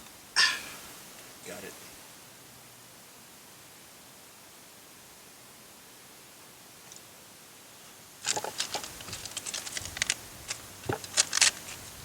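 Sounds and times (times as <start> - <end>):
quiet hiss: 0.0 - 12.0
small plastic parts clicking: 8.2 - 11.8.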